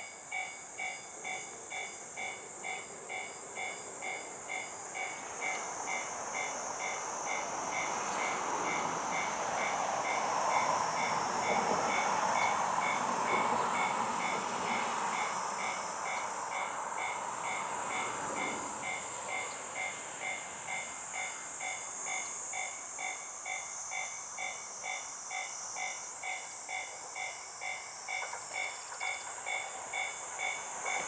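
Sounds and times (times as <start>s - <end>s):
railroad crossing alarm ringing: 0.0s - 31.0s
train passing: 0.0s - 31.0s.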